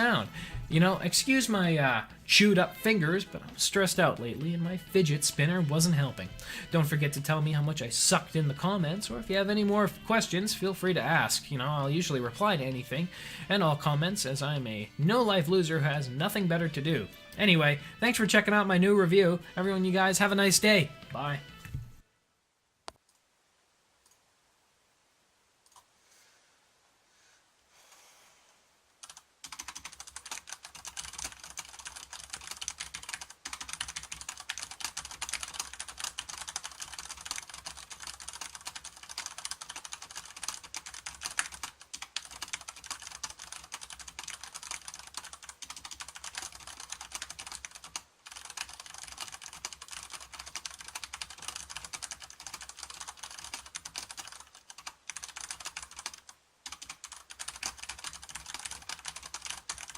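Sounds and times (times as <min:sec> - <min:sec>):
typing on mechanical keyboard: 0:29.0 - 0:59.9.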